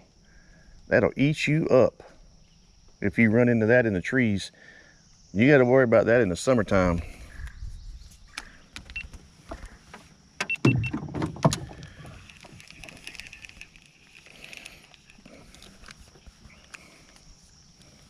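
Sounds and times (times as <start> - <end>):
faint insect buzz: 0.0 - 10.5, 11.6 - 18.0
knocks and thumps in boat: 9.5 - 12.6
scattered clicks: 11.5 - 17.9.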